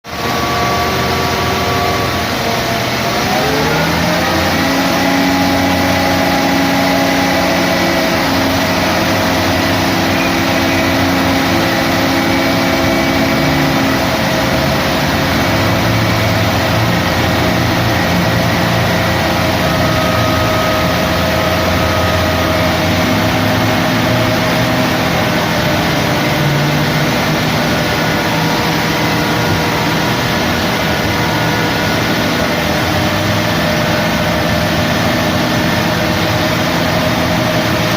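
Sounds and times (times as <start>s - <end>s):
heavy diesel engines running: 0.0s - 37.9s
steady whine: 0.0s - 37.9s.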